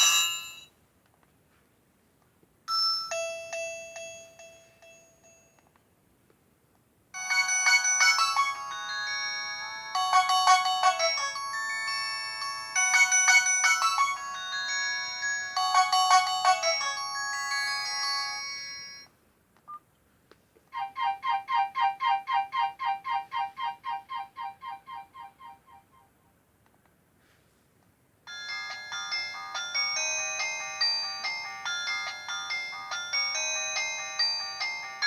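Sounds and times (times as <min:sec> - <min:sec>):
electronic ringtone melody: 0:00.0 - 0:00.7, 0:07.2 - 0:19.1, 0:20.8 - 0:26.0, 0:28.3 - 0:35.0.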